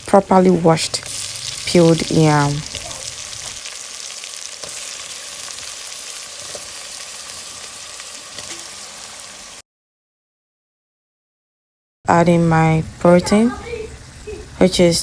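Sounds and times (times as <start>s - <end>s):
food frying in oil: 0.0s - 9.6s.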